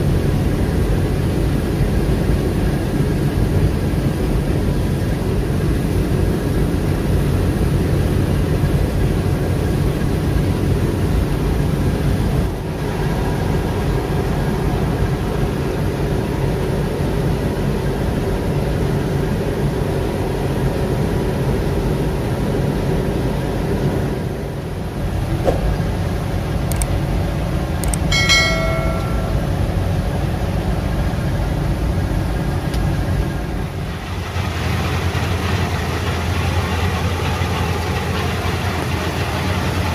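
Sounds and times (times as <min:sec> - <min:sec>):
combine harvester running: 0:00.0 - 0:39.9
short pitched tone: 0:28.1 - 0:29.9.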